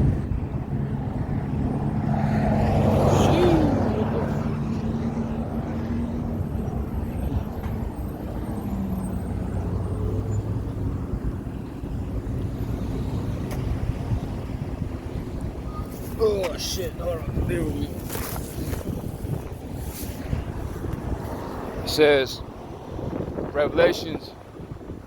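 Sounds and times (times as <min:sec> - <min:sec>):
vehicle passing close by: 0:00.0 - 0:15.8.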